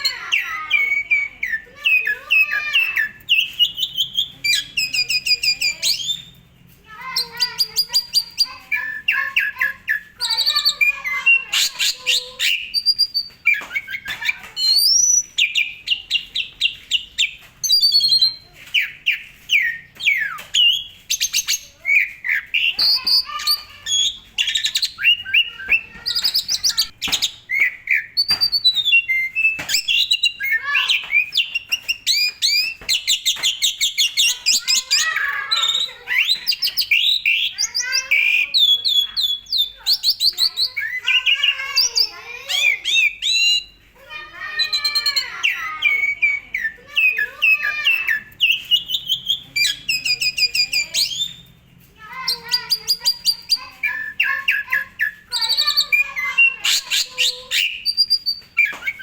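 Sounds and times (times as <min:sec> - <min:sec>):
starling singing: 0:00.0 - 0:59.0.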